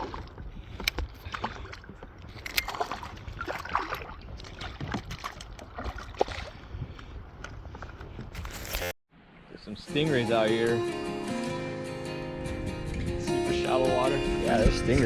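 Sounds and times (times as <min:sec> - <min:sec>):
water lapping and splashing: 0:00.0 - 0:09.8.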